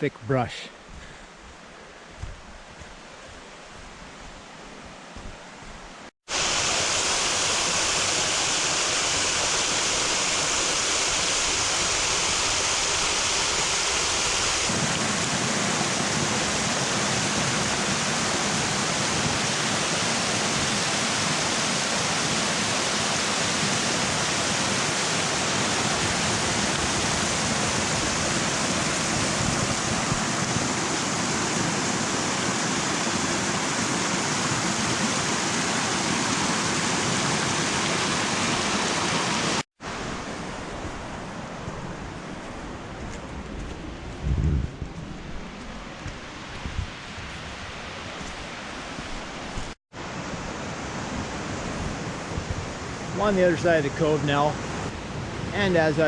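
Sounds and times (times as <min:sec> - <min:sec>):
waterfall rushing: 0:06.3 - 0:41.6.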